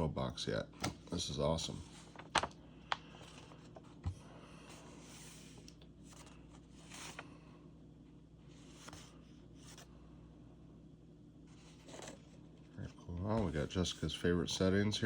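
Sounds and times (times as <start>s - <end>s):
low room hum: 0.0s - 15.0s
paper cards rustling and sliding: 1.8s - 4.0s, 4.7s - 7.3s, 8.5s - 9.9s, 11.5s - 12.4s.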